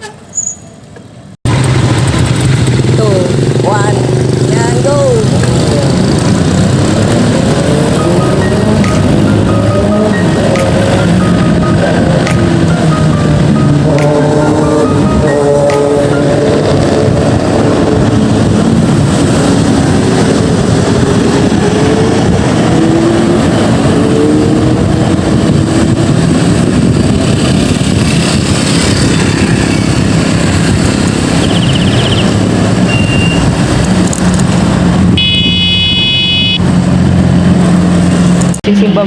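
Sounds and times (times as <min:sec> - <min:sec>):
vehicle engine and road noise: 0:00.0 - 0:39.0
high steady tone: 0:07.4 - 0:17.5.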